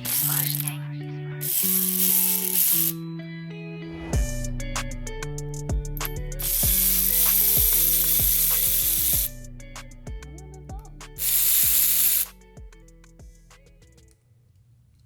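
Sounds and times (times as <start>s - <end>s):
spray hissing: 1.4s - 3.0s, 6.4s - 9.3s, 11.2s - 12.4s
background music with a beat: 3.9s - 14.1s.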